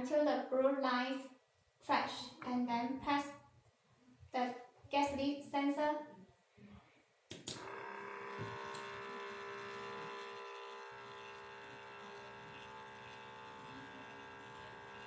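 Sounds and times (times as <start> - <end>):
small gear motor whining: 7.6 - 15.0.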